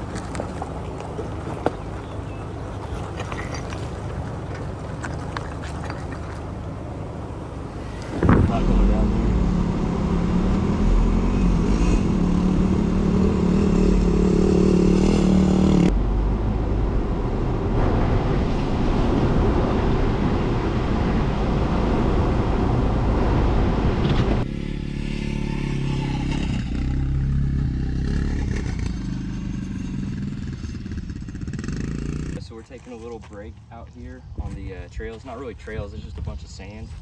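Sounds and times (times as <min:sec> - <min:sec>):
truck engine running under load: 0:00.0 - 0:05.0, 0:06.4 - 0:11.5
tyre and body noise: 0:00.0 - 0:08.5.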